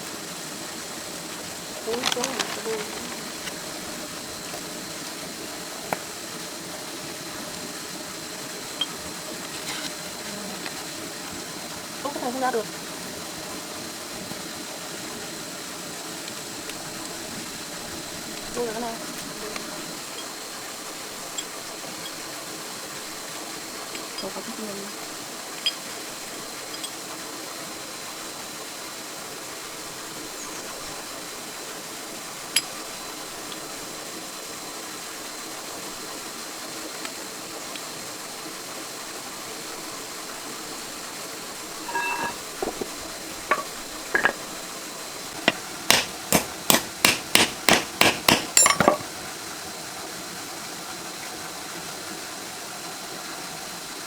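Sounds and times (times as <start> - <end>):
metal clinks: 41.8 - 42.9, 43.5 - 44.5, 45.9 - 49.0
hammer striking metal: 41.9 - 42.9, 43.5 - 44.4, 45.5 - 49.0.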